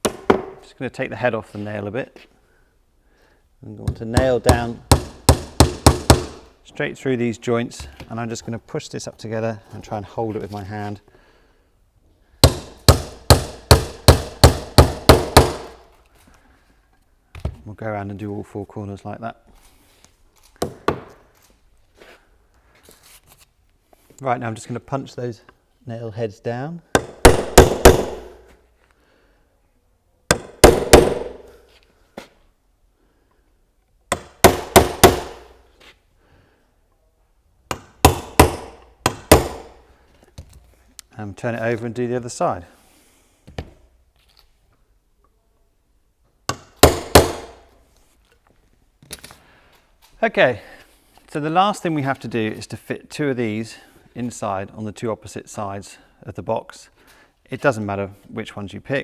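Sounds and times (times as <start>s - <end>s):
hammer striking nail: 0.0s - 0.6s, 4.1s - 6.5s, 12.4s - 15.8s, 27.0s - 28.4s, 30.3s - 31.5s, 34.1s - 35.6s, 37.7s - 39.8s, 46.5s - 47.6s.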